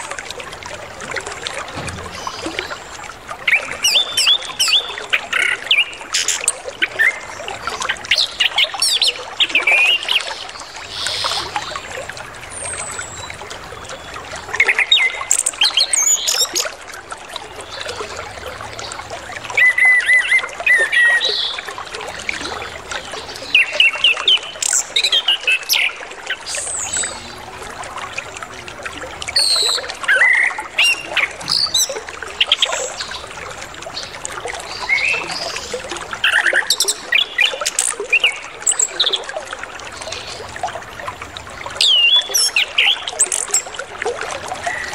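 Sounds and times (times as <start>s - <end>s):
water trickling: 0.0s - 44.9s
bird singing chirps and trills: 1.8s - 11.8s, 23.0s - 27.4s, 29.3s - 33.3s, 33.9s - 39.3s, 41.8s - 43.8s.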